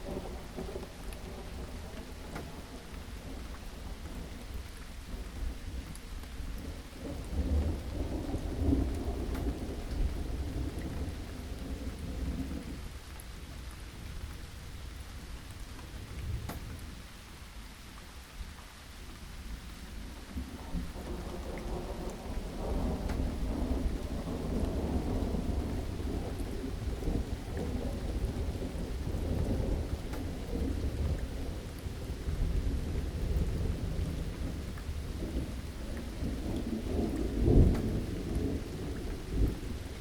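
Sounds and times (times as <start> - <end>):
steady rain: 0.0 - 40.0
rolling thunder: 6.6 - 12.8, 20.4 - 40.0.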